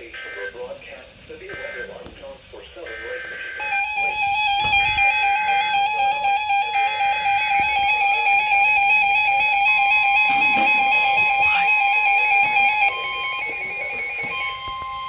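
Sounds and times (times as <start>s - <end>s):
steady alert tone: 3.5s - 15.0s.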